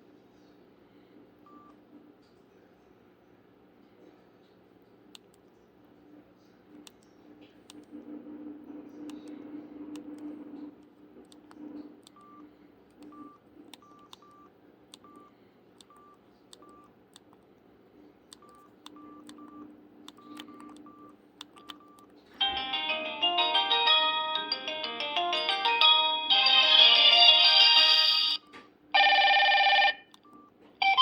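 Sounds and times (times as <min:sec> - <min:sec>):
phone keypad beeps: 0:12.1 - 0:12.4, 0:13.0 - 0:16.9, 0:18.4 - 0:22.1, 0:28.3 - 0:31.0
polyphonic ringtone playing: 0:22.4 - 0:28.4, 0:29.0 - 0:30.1.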